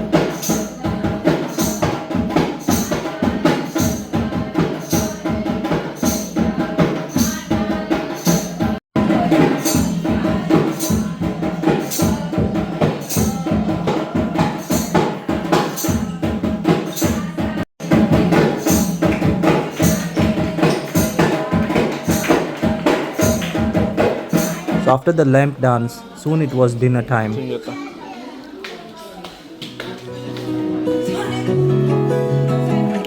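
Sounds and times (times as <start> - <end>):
folk music with percussion beat: 0.0 - 25.1
tambourine jingles: 0.1 - 7.5, 8.1 - 8.7, 9.3 - 17.4, 18.2 - 24.8.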